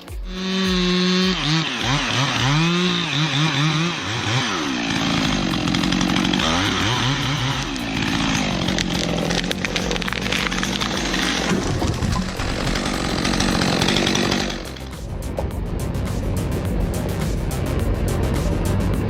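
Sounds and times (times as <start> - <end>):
chainsaw engine revving: 0.3 - 15.1.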